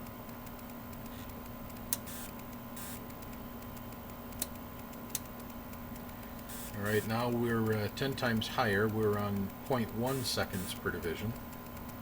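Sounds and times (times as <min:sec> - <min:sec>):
low equipment hum: 0:00.0 - 0:12.0
rotary switch clicks: 0:00.4 - 0:06.2.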